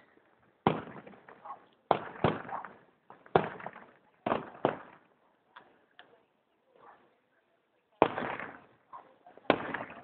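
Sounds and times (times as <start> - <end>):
fireworks bangs: 0.6 - 5.0, 8.0 - 8.7, 9.4 - 10.0.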